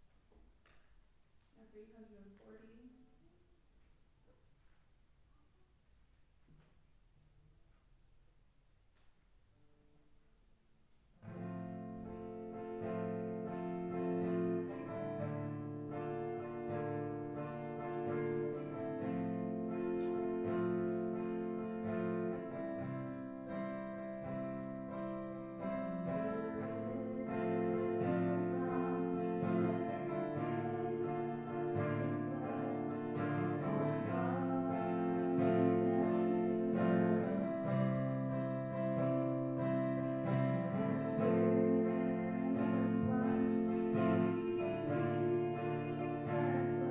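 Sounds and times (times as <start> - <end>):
guitar-led worship music: 11.2 - 46.9.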